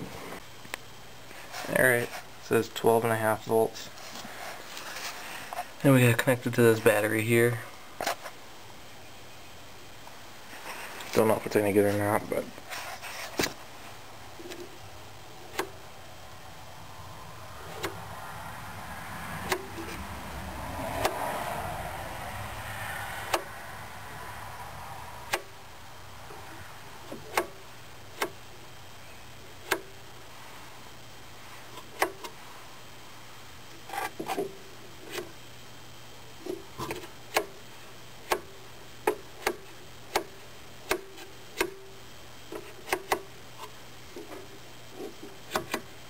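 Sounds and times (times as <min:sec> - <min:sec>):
sharp clicks and light knocks: 0:38.2 - 0:41.8.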